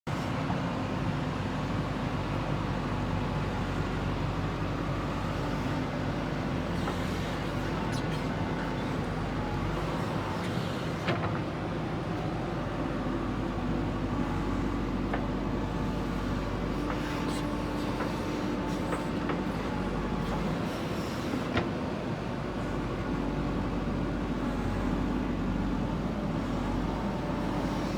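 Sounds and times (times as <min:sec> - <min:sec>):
diesel engine running: 0:22.6 - 0:27.9.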